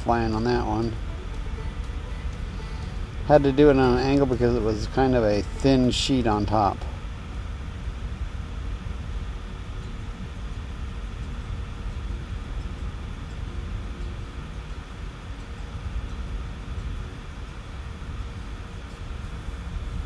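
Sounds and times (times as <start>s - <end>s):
excavator diesel engine drone: 0.0s - 9.7s
faint constant hum: 0.0s - 20.0s.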